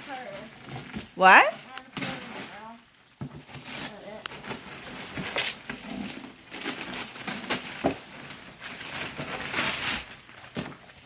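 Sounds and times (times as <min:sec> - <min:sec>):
wrapped present rustling: 0:00.0 - 0:11.0.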